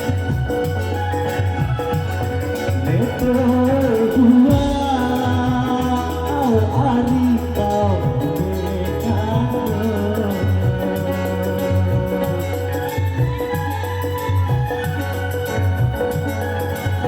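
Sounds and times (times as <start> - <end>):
musical accompaniment with bass: 0.0 - 17.0
person singing live: 0.0 - 17.0.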